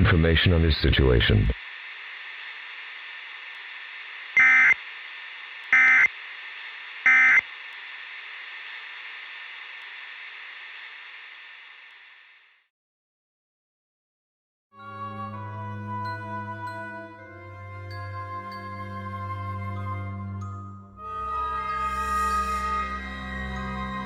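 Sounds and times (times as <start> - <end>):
static hiss: 1.2 - 12.7
digital data tone bursts: 4.4 - 4.8, 5.7 - 6.1, 7.1 - 7.4.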